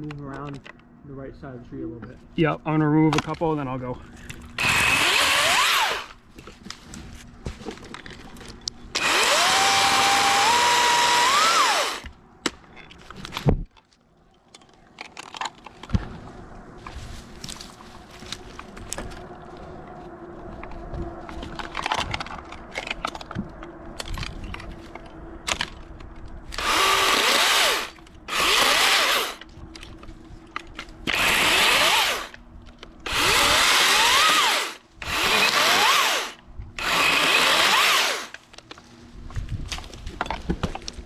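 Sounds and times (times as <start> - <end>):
chainsaw cutting wood: 4.6 - 6.2, 9.0 - 12.1, 26.5 - 29.4, 31.1 - 32.4, 33.0 - 38.4.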